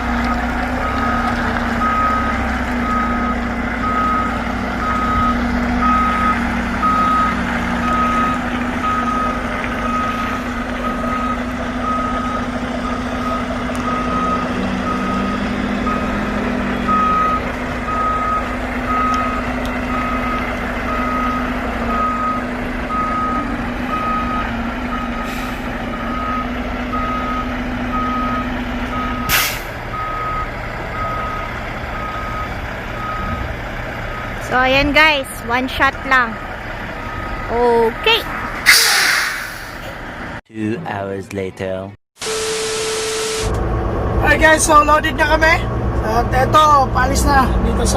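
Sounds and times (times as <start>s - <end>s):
truck backup alarm beeping: 0.0s - 39.9s, 42.2s - 45.6s
diesel engine running: 0.0s - 40.4s
air brakes hiss: 29.3s - 29.7s, 38.6s - 39.9s.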